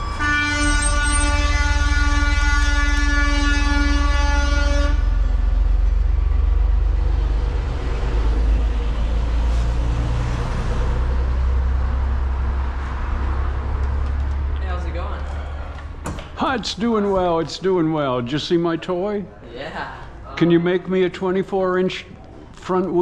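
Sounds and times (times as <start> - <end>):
loud horn blast: 0.0 - 5.5.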